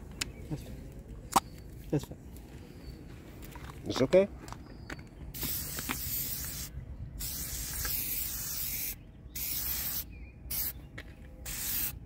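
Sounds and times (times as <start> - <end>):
aerosol can spraying: 5.4 - 10.8, 11.5 - 12.0.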